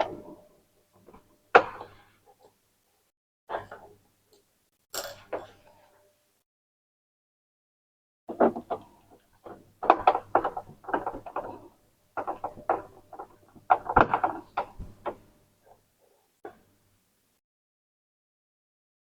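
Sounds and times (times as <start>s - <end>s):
plastic printer casing knocks: 9.5s - 11.6s, 12.2s - 15.2s.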